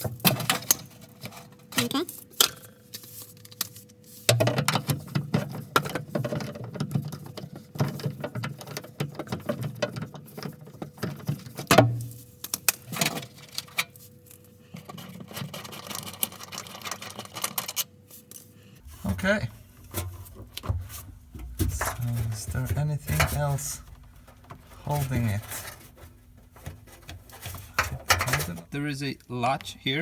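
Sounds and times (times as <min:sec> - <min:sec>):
plastic housing clicks and scrapes: 0:14.8 - 0:18.5.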